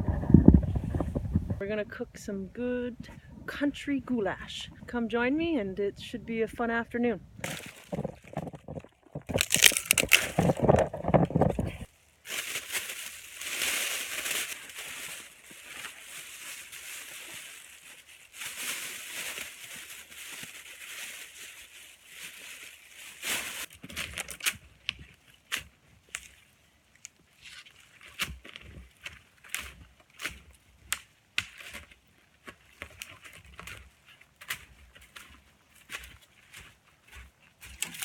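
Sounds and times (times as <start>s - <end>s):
sharp snaps and crackles: 7.4s - 11.9s
crunching in snow: 7.4s - 24.6s.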